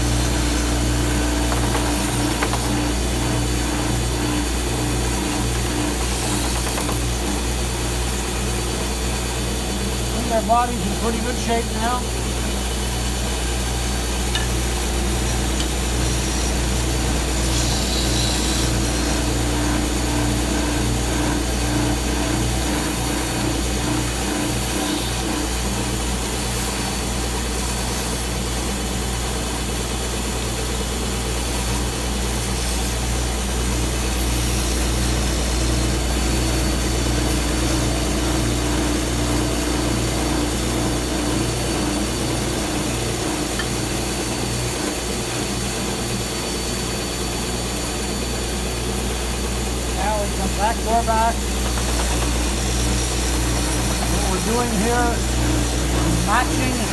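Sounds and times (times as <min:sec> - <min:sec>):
wooden box being sanded: 0:00.0 - 0:07.5, 0:15.4 - 0:28.2, 0:50.0 - 0:56.9
sander motor hum: 0:00.0 - 0:56.9.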